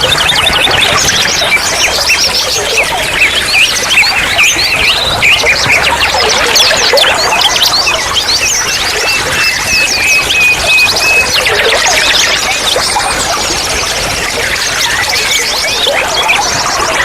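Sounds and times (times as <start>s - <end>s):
water babbling in a stream: 0.0s - 17.0s.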